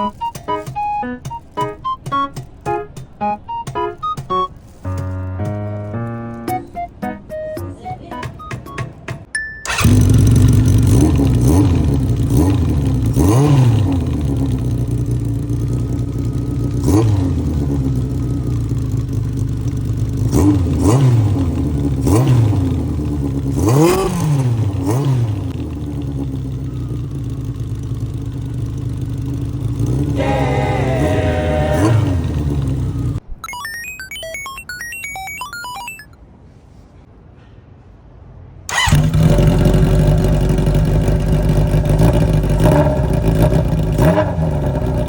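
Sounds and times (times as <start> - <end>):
motorcycle engine idling and revving: 9.7 - 33.2, 38.7 - 45.0.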